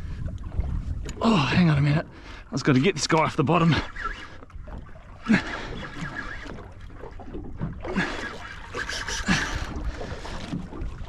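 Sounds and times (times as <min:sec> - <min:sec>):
wind on microphone: 0:00.0 - 0:01.7
water lapping against boat hull: 0:00.0 - 0:11.0.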